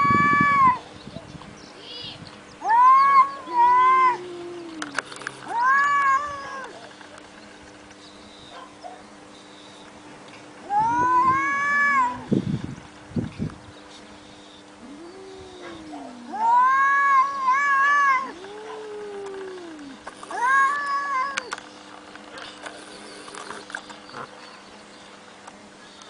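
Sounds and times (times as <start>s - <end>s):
cats yowling: 0.0s - 0.8s, 2.6s - 6.9s, 10.6s - 12.3s, 14.8s - 21.6s
cats growling: 2.7s - 7.0s, 10.6s - 12.3s, 14.8s - 21.6s.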